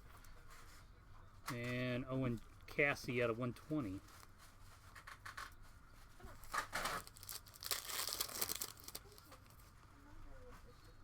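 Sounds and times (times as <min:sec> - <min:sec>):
wrapper tearing and crinkling: 0:06.4 - 0:09.6.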